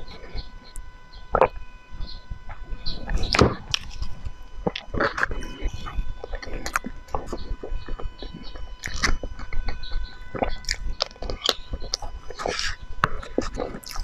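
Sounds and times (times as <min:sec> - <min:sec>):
chewing cake close up: 0:01.4 - 0:01.6, 0:03.1 - 0:14.0.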